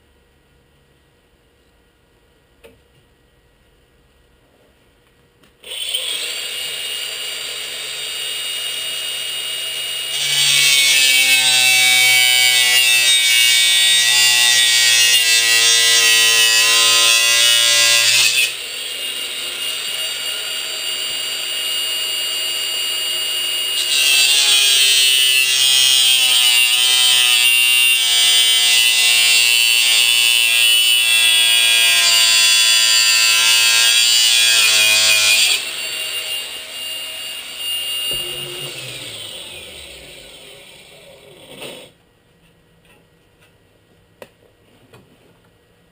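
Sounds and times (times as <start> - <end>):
power tool cutting sheet steel: 5.6 - 41.9.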